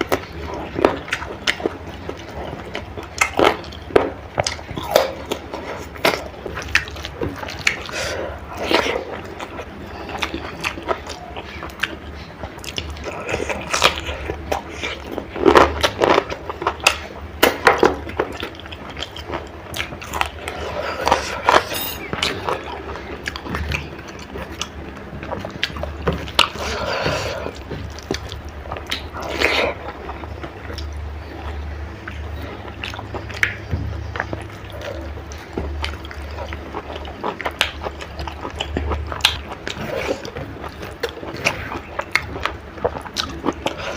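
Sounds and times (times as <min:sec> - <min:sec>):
chewing and biting food: 0:00.0 - 0:43.9
steady low hum: 0:00.0 - 0:43.9
wet smacks and clicks: 0:32.0 - 0:34.6.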